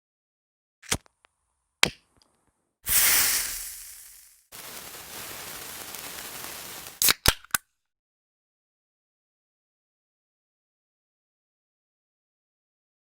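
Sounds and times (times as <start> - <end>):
steady hiss: 2.9 - 7.0
bright burst of noise: 2.9 - 7.1.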